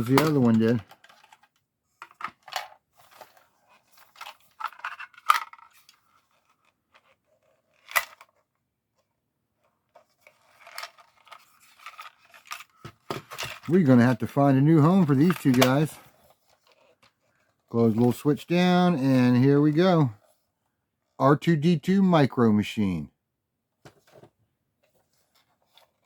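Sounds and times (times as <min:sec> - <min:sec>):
plastic toy clicks and rattles: 0:00.0 - 0:02.8, 0:04.0 - 0:07.1.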